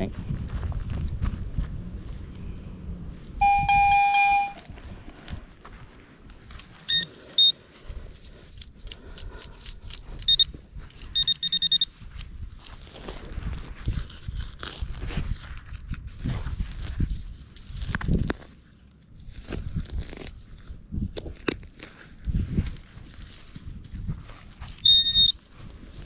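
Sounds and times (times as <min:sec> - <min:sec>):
metal detector low tone: 0:02.4 - 0:05.1, 0:06.7 - 0:07.6, 0:10.3 - 0:12.0, 0:24.7 - 0:25.5
metal detector high-pitched beeps: 0:03.4 - 0:04.7, 0:06.8 - 0:07.6, 0:10.3 - 0:12.0, 0:24.7 - 0:25.4.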